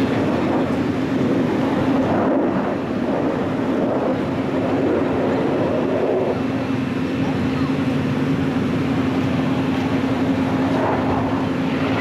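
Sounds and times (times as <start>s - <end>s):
jet engine noise: 0.0s - 12.0s
steady low hum: 0.0s - 12.0s.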